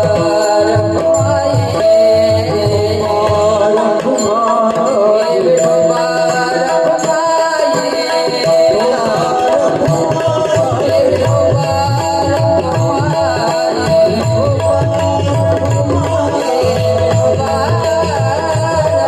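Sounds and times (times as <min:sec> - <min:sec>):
tabla playing: 0:00.0 - 0:19.0.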